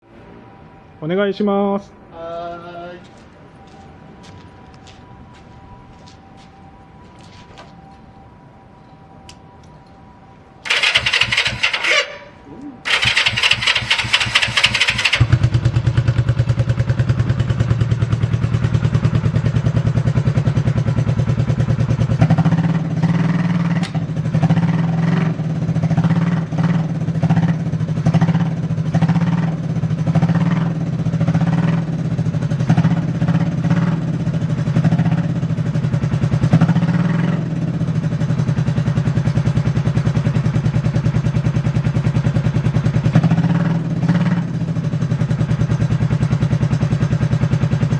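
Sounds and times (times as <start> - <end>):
electric starter whine: 8.8 - 15.5
motorcycle engine idling: 10.6 - 47.9.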